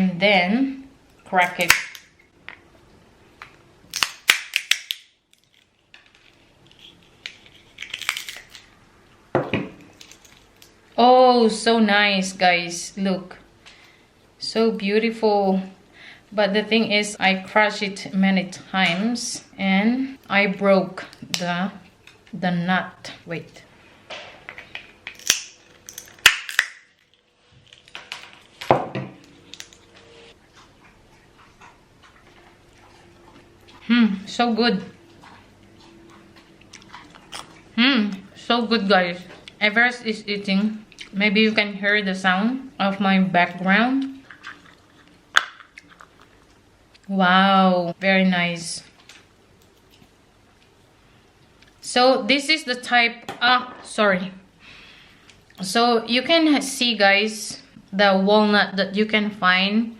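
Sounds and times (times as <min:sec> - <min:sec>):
walnut shell cracking: 0:03.9 - 0:08.7, 0:24.8 - 0:28.4.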